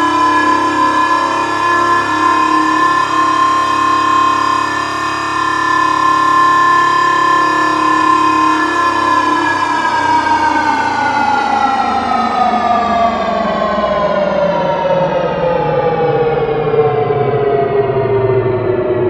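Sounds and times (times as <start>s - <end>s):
electronic tone sliding down: 0.0s - 12.4s.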